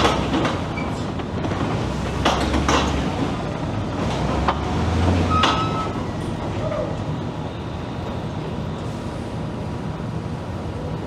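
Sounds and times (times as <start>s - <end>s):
metallic knocks and clanks: 2.2s - 3.3s.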